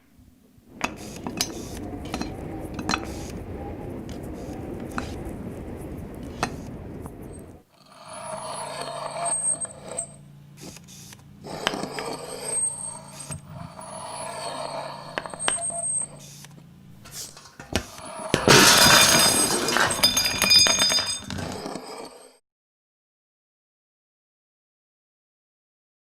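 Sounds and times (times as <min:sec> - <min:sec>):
low mechanical hum: 0:00.0 - 0:19.4
loud metallic clatter: 0:17.1 - 0:21.6.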